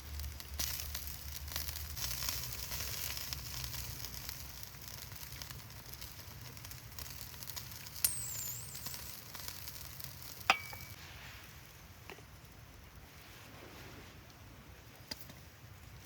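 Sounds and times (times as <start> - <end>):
food sizzling: 0.0 - 11.0.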